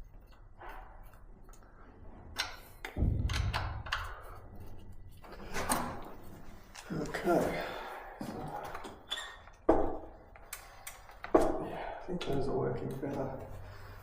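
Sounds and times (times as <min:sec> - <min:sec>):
loud low thud: 0:03.0 - 0:04.4.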